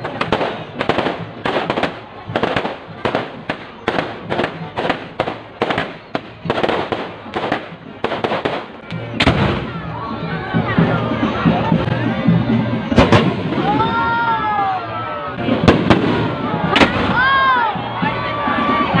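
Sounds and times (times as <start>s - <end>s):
fireworks bangs: 0.0s - 9.8s, 12.9s - 13.9s, 15.4s - 17.4s.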